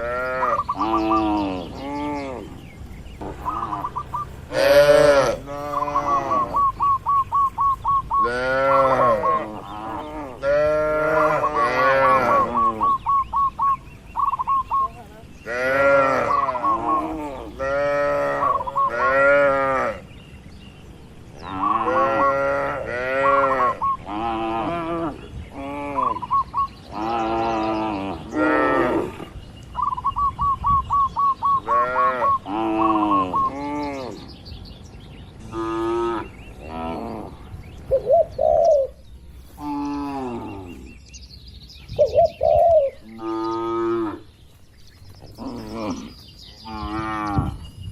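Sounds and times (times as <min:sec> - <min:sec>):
cattle mooing: 0:04.5 - 0:06.8, 0:08.2 - 0:13.0, 0:15.5 - 0:20.0, 0:21.5 - 0:26.2.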